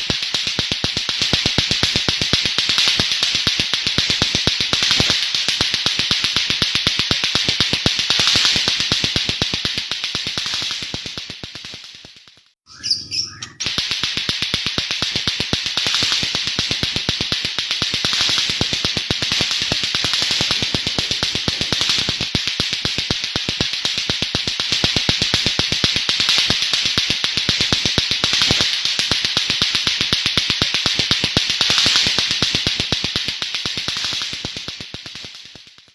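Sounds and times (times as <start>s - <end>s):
bird singing rapid clicking song: 12.7s - 13.7s.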